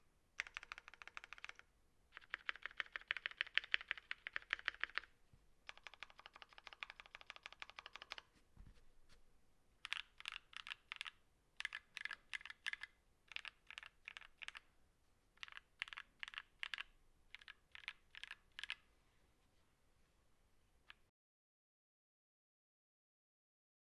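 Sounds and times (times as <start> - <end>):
mechanical keyboard typing: 0.4 - 5.1, 5.7 - 8.3, 9.8 - 14.7, 15.4 - 18.8.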